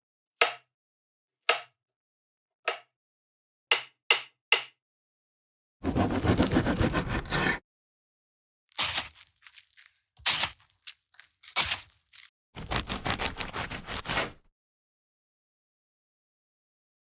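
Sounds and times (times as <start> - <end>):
kitchen knife chopping: 5.8 - 7.6, 8.8 - 14.4.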